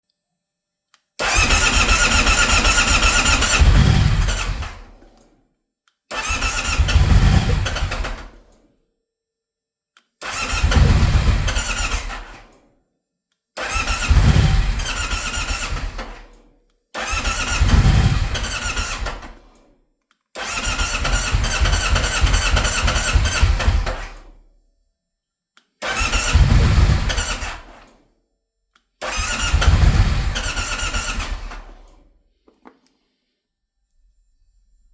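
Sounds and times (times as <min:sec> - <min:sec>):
car engine cranking on starter: 0:01.2 - 0:05.2, 0:06.1 - 0:08.5, 0:10.2 - 0:12.5, 0:13.6 - 0:16.4, 0:17.0 - 0:19.5, 0:20.4 - 0:24.3, 0:25.8 - 0:27.8, 0:29.0 - 0:32.0.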